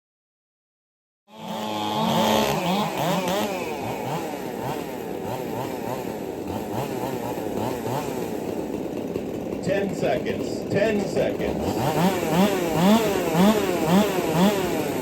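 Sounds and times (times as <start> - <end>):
chainsaws revving: 1.3 - 15.0.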